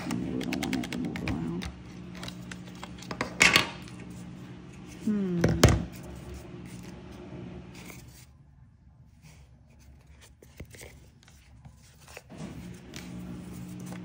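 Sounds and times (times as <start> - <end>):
steady low hum: 0.0 - 10.3.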